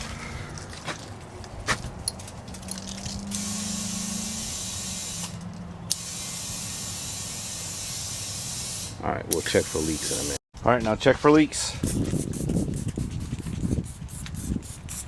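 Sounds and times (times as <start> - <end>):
compressed air hissing into tyre: 3.3 - 10.4.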